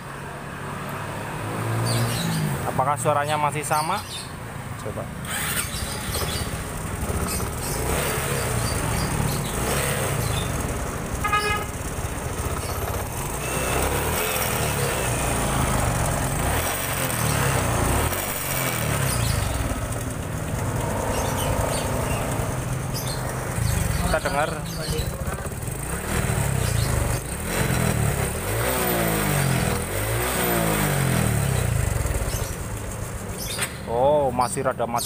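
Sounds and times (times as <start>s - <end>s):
motorcycle engine idling unevenly: 5.8s - 14.0s, 18.8s - 28.3s, 31.4s - 34.4s.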